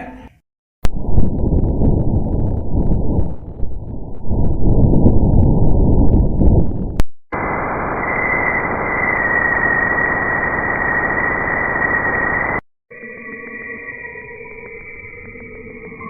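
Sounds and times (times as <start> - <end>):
low rumbling noise: 0.8 - 12.6
static-like hiss: 6.0 - 12.6
eerie held tones: 7.4 - 16.0.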